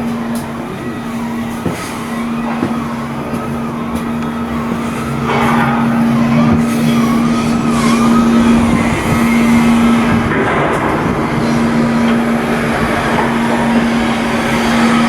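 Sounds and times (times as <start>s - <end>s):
high whine dipping and rising: 0.0s - 15.0s
machinery hum: 0.0s - 15.0s.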